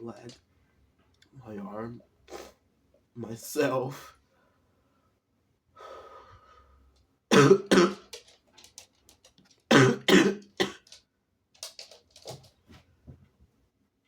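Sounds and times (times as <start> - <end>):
person coughing: 7.3 - 8.1, 9.7 - 10.9
throat clearing: 9.7 - 10.9.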